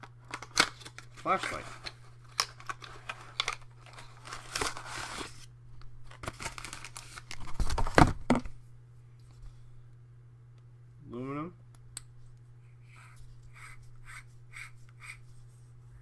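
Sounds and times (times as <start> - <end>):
packaging rustling and tearing: 0.0 - 8.5.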